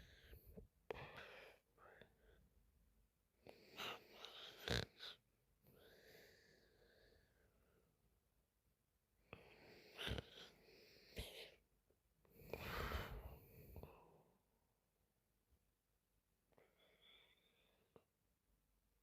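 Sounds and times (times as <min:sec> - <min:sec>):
woman breathing in sleep: 0:12.4 - 0:14.2.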